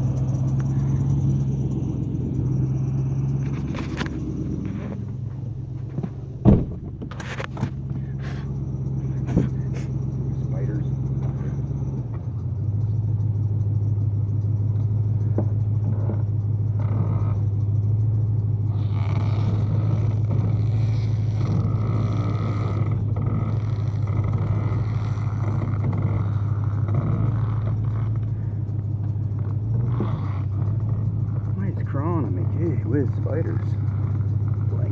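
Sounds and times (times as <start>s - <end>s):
rustling and scraping: 0.0s - 10.1s
low machine hum: 0.0s - 34.9s.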